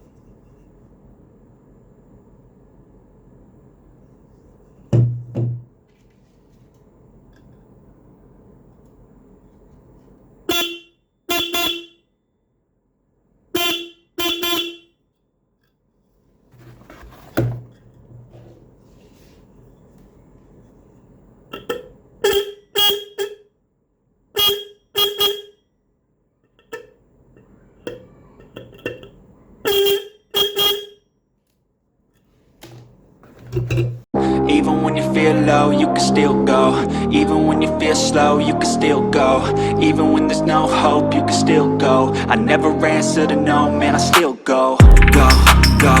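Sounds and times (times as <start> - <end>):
buzzy electric vehicle horn honks: 10.5 - 12.0, 13.6 - 14.9, 21.6 - 23.5, 24.4 - 25.6, 27.9 - 31.0.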